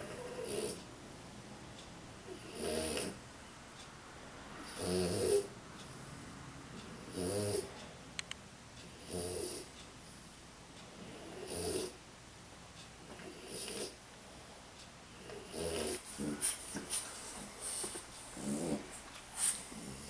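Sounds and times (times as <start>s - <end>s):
dog snoring: 0.0s - 0.9s, 2.3s - 3.2s, 4.6s - 5.5s, 7.1s - 7.8s, 9.0s - 9.7s, 11.0s - 12.0s, 13.2s - 14.0s, 15.2s - 16.6s, 17.6s - 20.0s.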